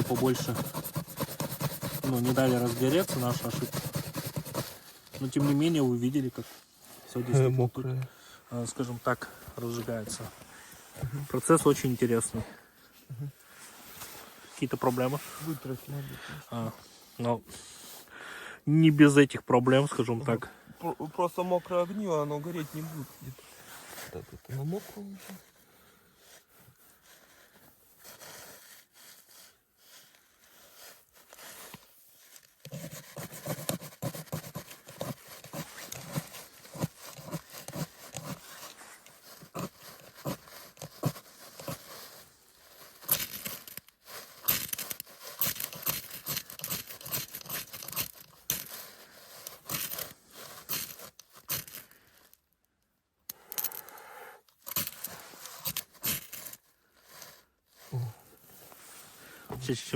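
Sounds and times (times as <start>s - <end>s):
kindling scraping and tearing: 30.4s - 52.1s.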